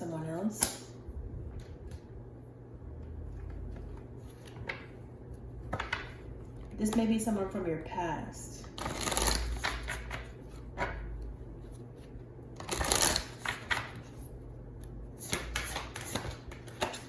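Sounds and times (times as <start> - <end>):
cards being shuffled: 3.3 - 6.8, 8.8 - 11.0, 11.6 - 14.2, 15.2 - 17.0.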